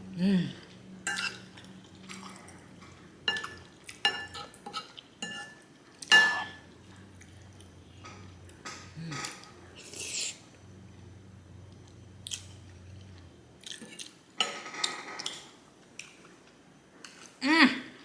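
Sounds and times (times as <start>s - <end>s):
metal cutlery clinking on a plate: 3.3s - 6.6s.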